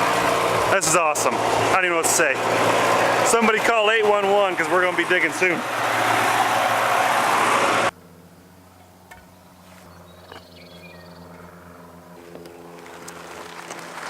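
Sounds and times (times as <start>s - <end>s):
tractor engine running: 0.0s - 14.0s
low hum: 7.4s - 14.0s.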